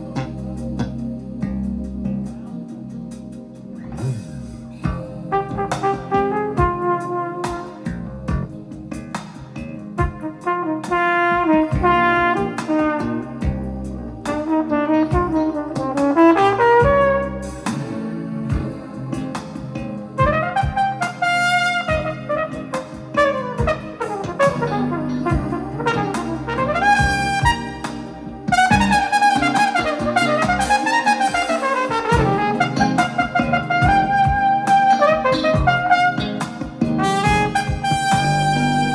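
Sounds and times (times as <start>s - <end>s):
brass horns playing melody: 0.0s - 9.2s, 9.8s - 38.9s
bass: 0.0s - 38.9s
sharp drum hits: 26.2s - 38.6s.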